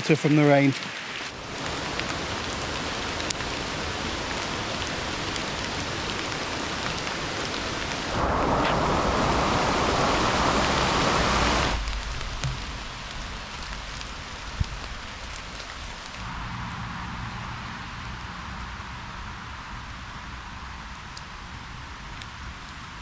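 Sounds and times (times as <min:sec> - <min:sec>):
deep rushing water: 0:00.0 - 0:15.8
steady rain falling: 0:00.0 - 0:16.4, 0:18.4 - 0:23.0.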